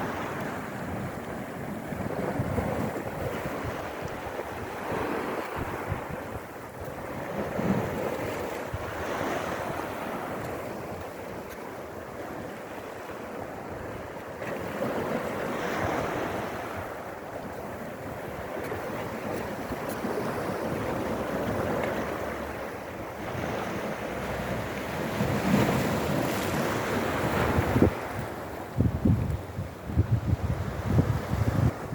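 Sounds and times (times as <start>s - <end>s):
waves splashing against rocks: 0.0s - 31.9s
waves washing onto pebbles: 14.5s - 29.1s.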